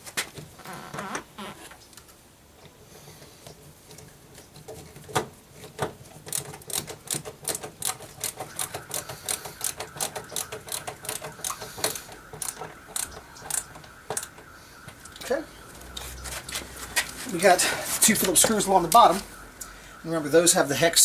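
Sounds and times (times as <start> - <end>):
screwdriver ratchet clicking: 6.3 - 14.3.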